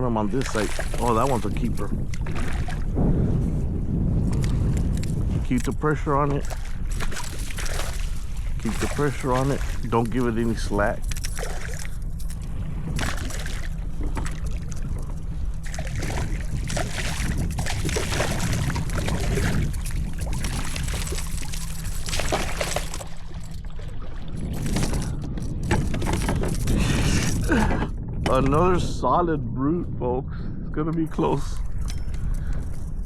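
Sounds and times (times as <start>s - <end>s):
steady low rumble: 0.0s - 33.0s
fish splashing in water: 0.4s - 2.9s, 6.4s - 15.0s, 15.6s - 25.1s.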